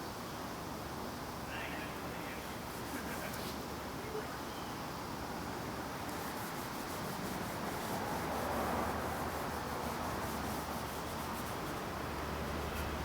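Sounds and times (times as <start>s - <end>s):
wax stick rubbing on wood: 6.1s - 13.0s.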